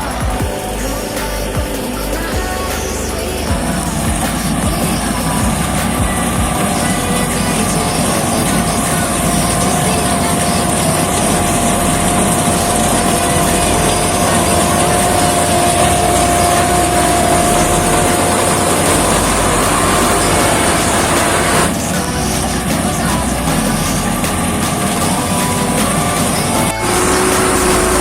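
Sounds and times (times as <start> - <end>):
combine harvester engine and machinery: 0.0 - 28.0
steady mechanical whine: 0.0 - 28.0.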